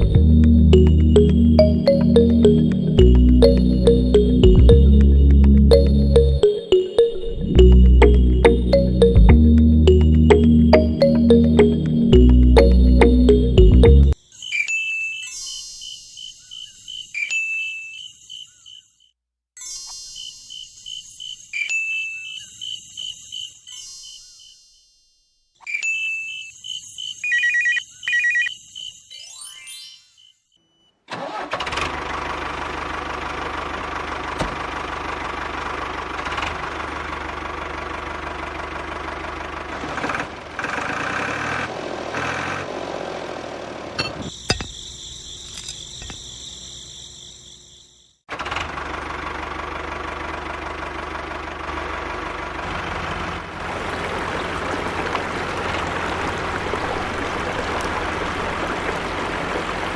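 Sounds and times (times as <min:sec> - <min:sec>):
tractor engine running: 0:00.0 - 0:14.2, 0:31.1 - 0:44.6, 0:48.3 - 0:59.9.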